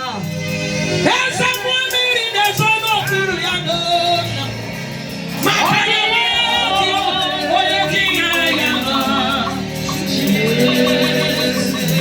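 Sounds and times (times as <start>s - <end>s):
band playing steady beat: 0.0s - 12.0s
person singing with vibrato: 1.0s - 12.0s.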